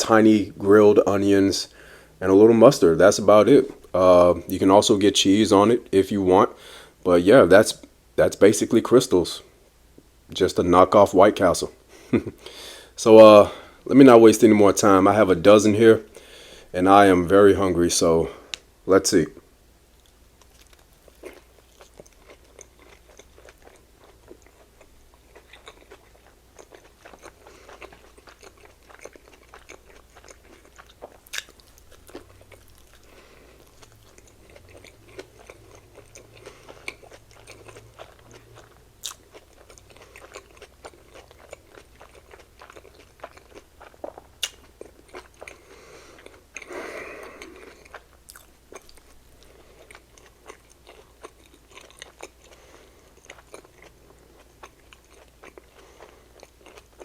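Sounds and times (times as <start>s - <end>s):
person chewing food: 20.0s - 57.0s.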